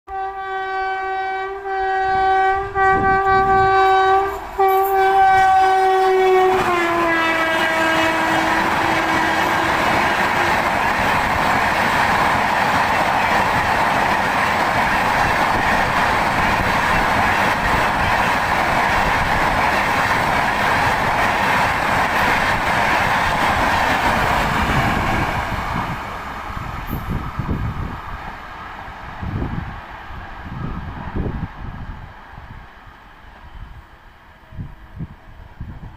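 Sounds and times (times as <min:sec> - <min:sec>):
locomotive horn blast: 0:00.1 - 0:10.6
train coaches running by: 0:00.1 - 0:35.9.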